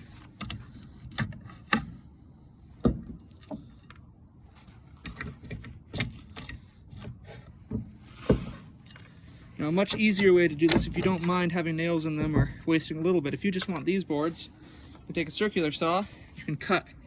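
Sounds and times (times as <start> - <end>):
light metallic jingling: 8.5 - 11.9.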